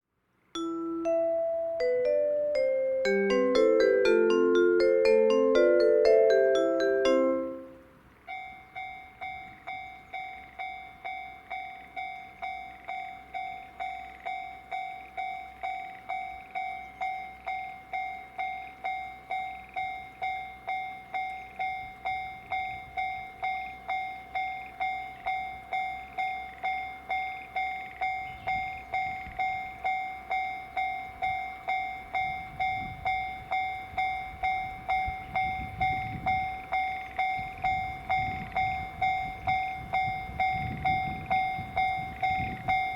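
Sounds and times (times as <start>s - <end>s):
level-crossing warning bell: 0.6s - 42.9s
train rumble: 7.8s - 42.9s.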